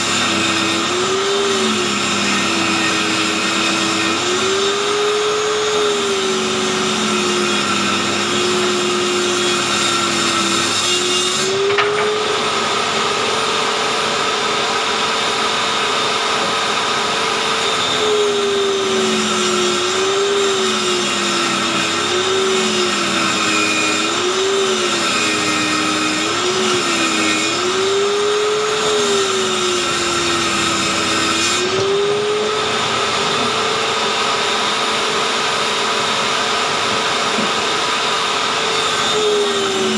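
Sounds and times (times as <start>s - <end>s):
circular saw ripping board: 9.8s - 13.1s.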